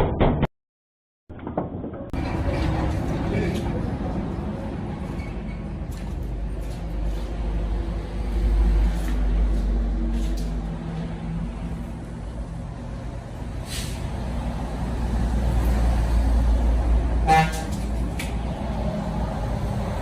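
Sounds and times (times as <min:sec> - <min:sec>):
vehicle horn toot: 0:17.2 - 0:17.8.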